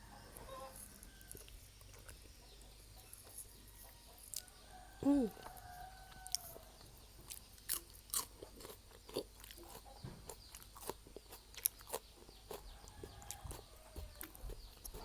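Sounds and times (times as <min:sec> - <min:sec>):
person chewing food: 0:01.2 - 0:02.4, 0:07.2 - 0:15.0.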